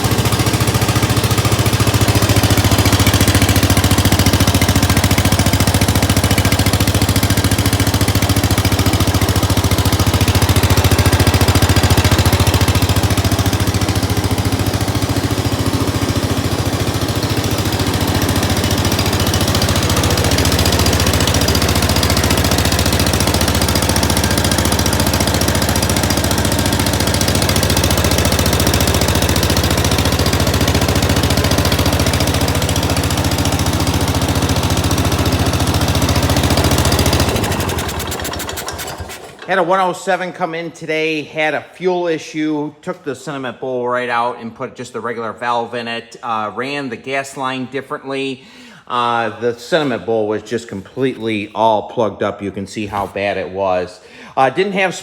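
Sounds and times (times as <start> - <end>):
lawn tractor engine running: 0.0 - 40.0.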